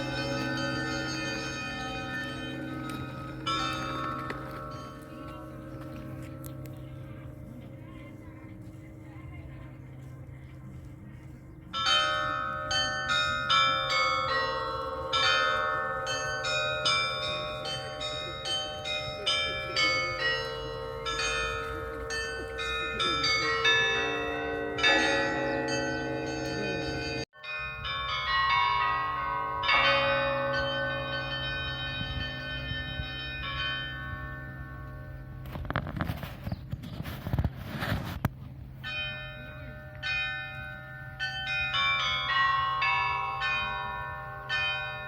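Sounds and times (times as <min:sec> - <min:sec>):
church bells ringing: 0:00.0 - 0:36.1, 0:38.7 - 0:45.0.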